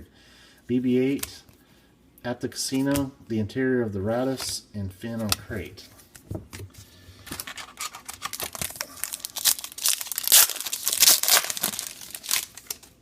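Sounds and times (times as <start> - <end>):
plastic wrapper tearing and crinkling: 7.3 - 13.0.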